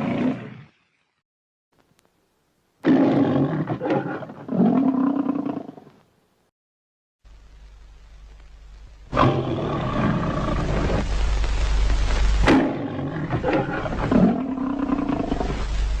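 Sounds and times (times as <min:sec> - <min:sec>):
big cat roaring and growling: 0:00.0 - 0:00.7, 0:02.8 - 0:05.8, 0:09.1 - 0:11.0, 0:12.4 - 0:15.6.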